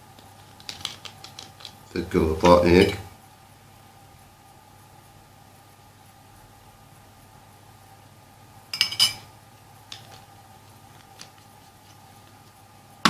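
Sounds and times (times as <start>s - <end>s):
spoon clinking against dish: 8.8s - 9.3s.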